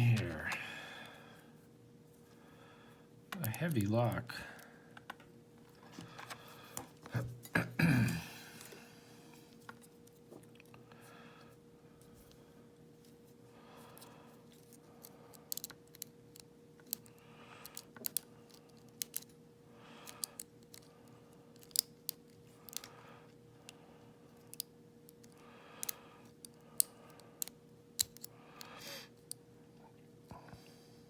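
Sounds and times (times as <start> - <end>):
lock pick clicking: 26.8 - 28.3.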